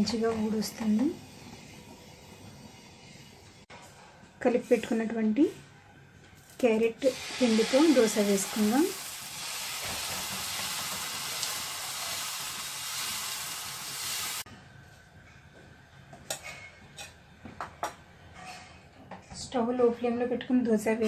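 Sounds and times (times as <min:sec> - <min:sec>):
batter sizzling on a hot griddle: 0:07.1 - 0:14.5.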